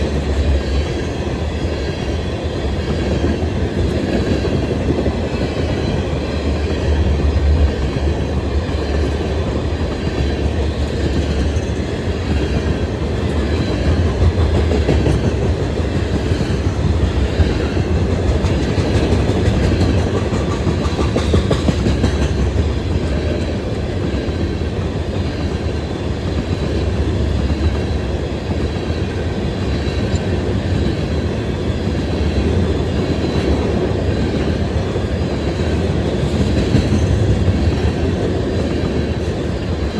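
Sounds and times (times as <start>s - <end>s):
freight train rumbling past: 0.0s - 39.9s
wheels clicking over rail joints: 7.0s - 23.8s.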